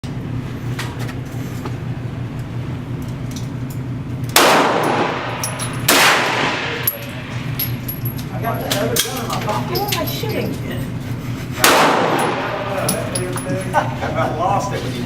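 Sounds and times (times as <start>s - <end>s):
steady low hum: 0.0s - 15.0s
distant gunshots: 4.4s - 6.8s, 11.6s - 12.6s
loud echoing gunshots: 4.4s - 7.4s, 11.6s - 12.8s.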